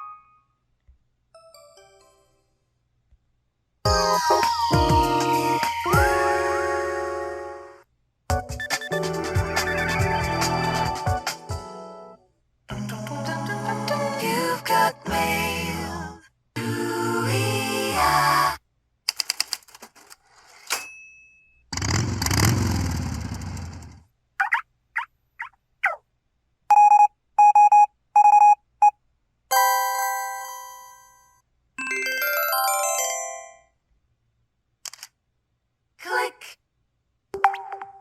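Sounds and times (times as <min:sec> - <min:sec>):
quick even beeps: 0:26.7 - 0:28.6.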